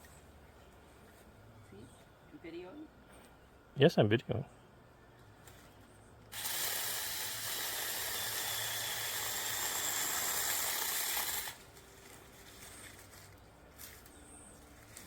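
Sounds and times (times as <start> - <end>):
mini chainsaw high whine: 6.3 - 11.6.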